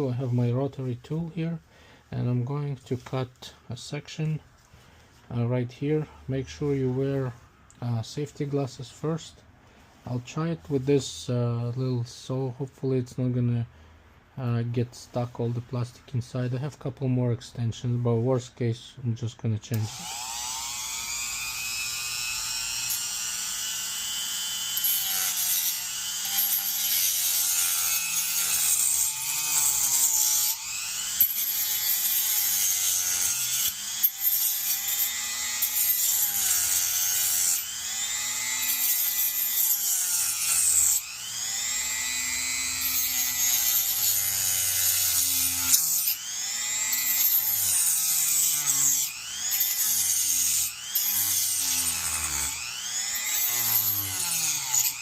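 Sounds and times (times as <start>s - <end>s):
rotary tool cutting plastic: 19.7s - 55.0s.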